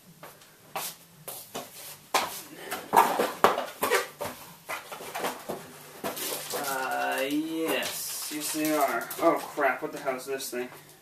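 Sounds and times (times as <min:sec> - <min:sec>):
cardboard and packaging rustling: 0:02.7 - 0:10.2.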